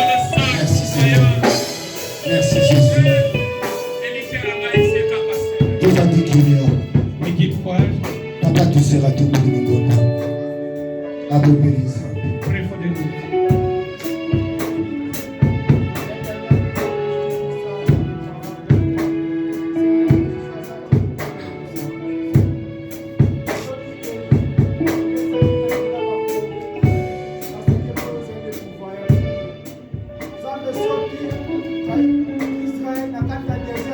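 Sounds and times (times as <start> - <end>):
melodic instrument holding notes: 0.0 - 15.5
drum kit beat: 0.0 - 33.9
guitar: 0.0 - 33.9.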